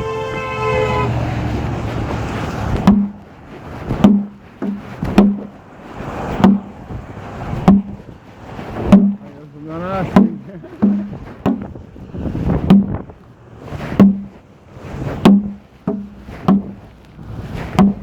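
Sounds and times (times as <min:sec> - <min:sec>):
cloth rubbing on microphone: 0:00.0 - 0:18.0
muffled knocks in a pocket: 0:02.7 - 0:05.6, 0:15.1 - 0:18.0.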